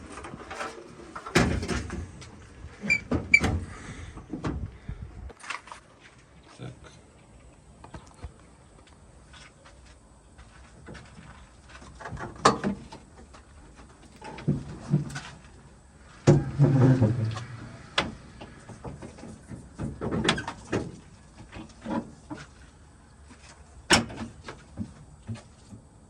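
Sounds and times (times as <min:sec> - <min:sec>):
truck cab knocks and clunks: 0:01.3 - 0:02.2, 0:02.8 - 0:04.7.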